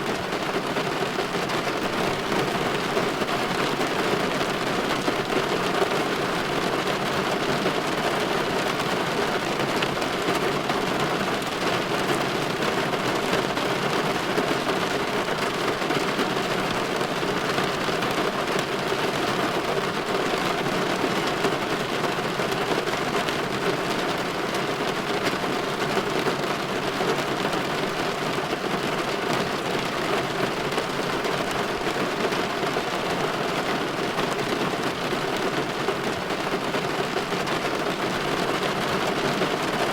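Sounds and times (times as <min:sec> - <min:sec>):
rain on a window pane: 0:00.0 - 0:39.9.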